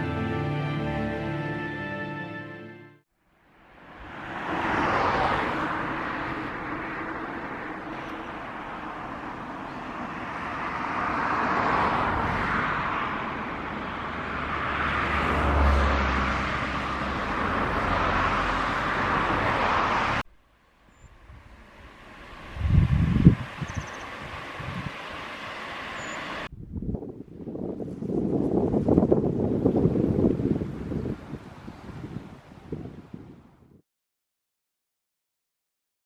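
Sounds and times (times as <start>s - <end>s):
tyres and engine rushing: 3.6s - 26.5s
deep vehicle rumble: 12.0s - 26.7s.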